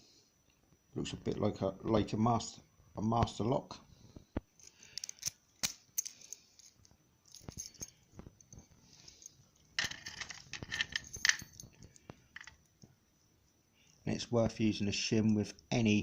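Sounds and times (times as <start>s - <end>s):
metal lock parts clicking: 4.6s - 8.6s, 9.6s - 12.7s
metal rattle: 9.8s - 12.6s.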